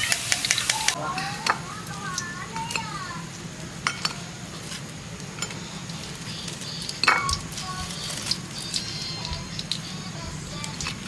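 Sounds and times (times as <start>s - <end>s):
metal utensil clinking on pan: 0.0s - 2.9s, 3.8s - 4.3s, 6.9s - 7.5s
batter frying in hot oil: 0.0s - 11.0s.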